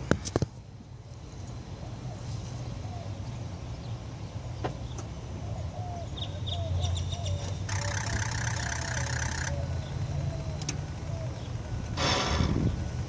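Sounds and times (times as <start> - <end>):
engine cranking: 7.6 - 9.9.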